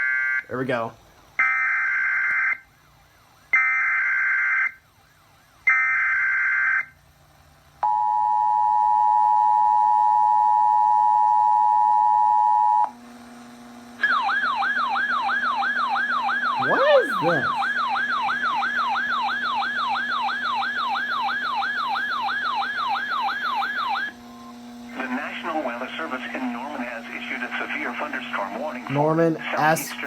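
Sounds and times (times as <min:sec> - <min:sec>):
warbling siren-like alert tone: 0:14.0 - 0:24.1.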